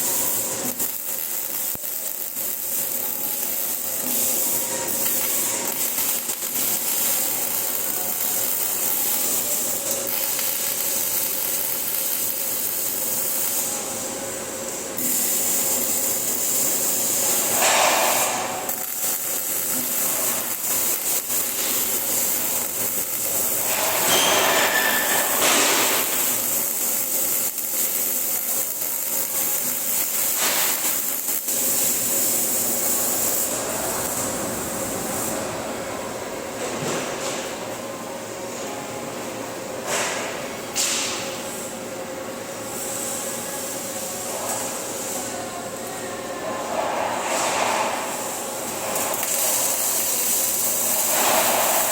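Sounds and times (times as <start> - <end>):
welding arc crackling: 0.0 - 35.6, 46.7 - 51.9.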